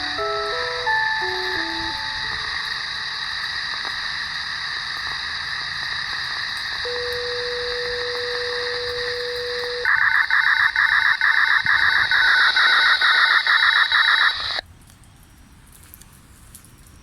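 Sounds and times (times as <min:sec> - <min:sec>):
steady beep tone: 0:00.0 - 0:03.7, 0:06.9 - 0:09.9
two-pitch pulsing radio signal: 0:00.0 - 0:05.2.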